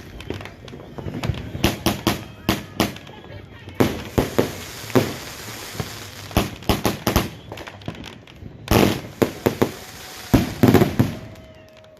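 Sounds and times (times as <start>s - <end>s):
firework bangs: 0.0s - 11.9s
firework crackling: 0.0s - 11.9s.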